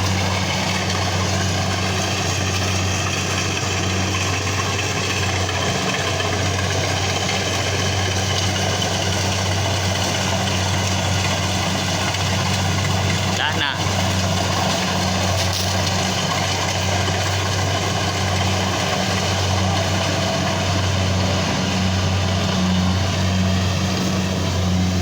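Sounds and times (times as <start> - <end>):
engine humming steadily: 0.0 - 25.0.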